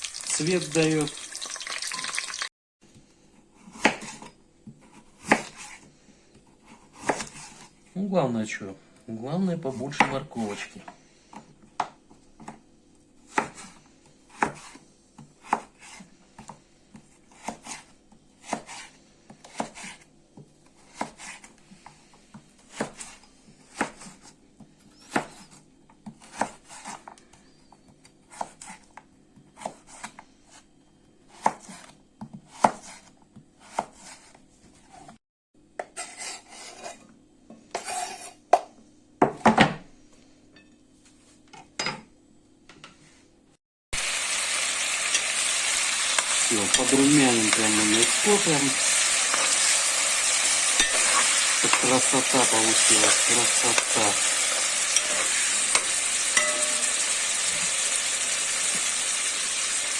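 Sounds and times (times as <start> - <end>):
knife chopping on cutting board: 3.6 - 5.9, 6.6 - 7.7, 13.3 - 21.5, 22.3 - 24.4, 25.0 - 27.2, 28.3 - 30.6, 31.3 - 35.1.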